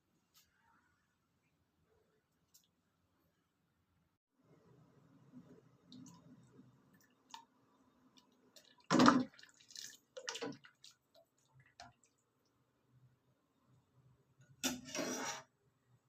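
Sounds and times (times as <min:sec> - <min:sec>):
clatter or splash: 0:08.6 - 0:11.0.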